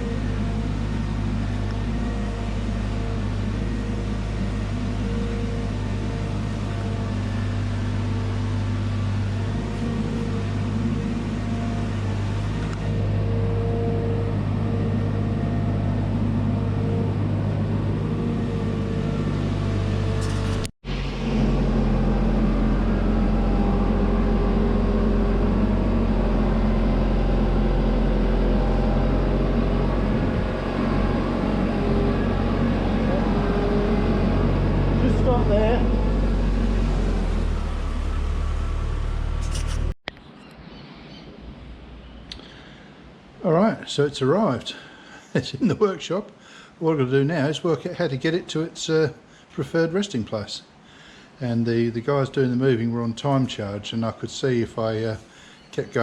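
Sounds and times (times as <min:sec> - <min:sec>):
truck engine running: 0:00.0 - 0:40.0.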